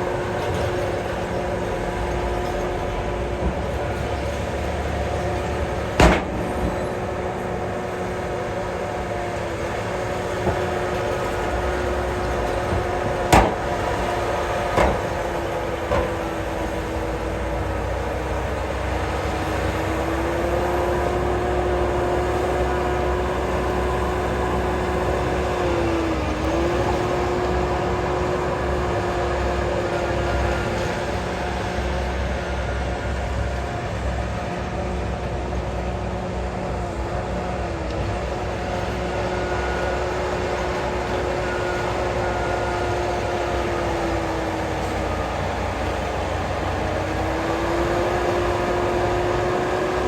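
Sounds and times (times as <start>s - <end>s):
heavy vehicle engine running: 0.0s - 50.0s
sharp knocks: 6.0s - 6.8s, 13.1s - 14.0s.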